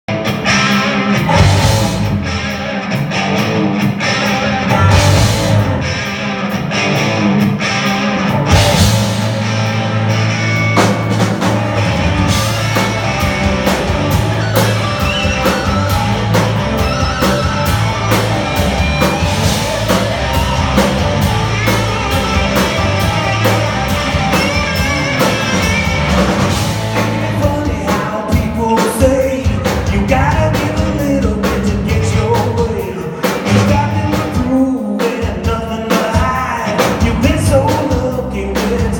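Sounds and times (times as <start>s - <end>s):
live rock band playing: 0.1s - 38.9s
drum beat with hi-hat: 1.2s - 2.2s, 8.4s - 9.4s, 10.8s - 38.9s.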